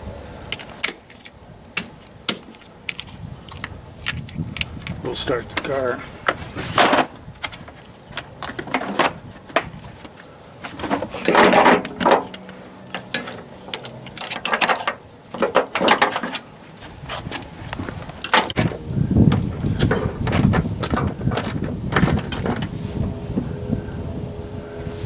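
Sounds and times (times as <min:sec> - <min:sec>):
metal tools rattling: 0:10.6 - 0:16.5, 0:18.2 - 0:22.7.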